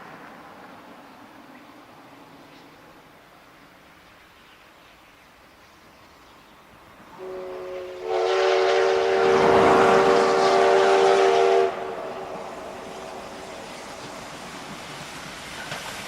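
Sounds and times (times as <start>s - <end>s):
steam locomotive whistle: 7.2s - 13.4s.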